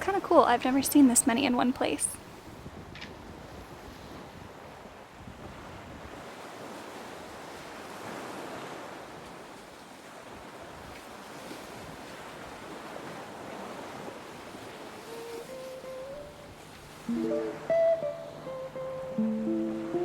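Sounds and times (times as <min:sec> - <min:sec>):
water rushing along hulls: 0:00.0 - 0:20.0
wind noise on microphone: 0:02.2 - 0:09.0, 0:10.3 - 0:19.2.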